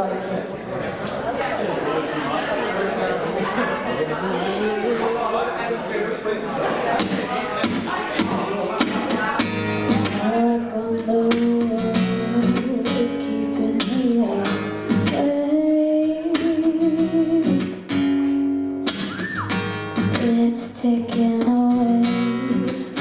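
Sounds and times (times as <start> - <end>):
acoustic guitar strumming: 7.0 - 23.0.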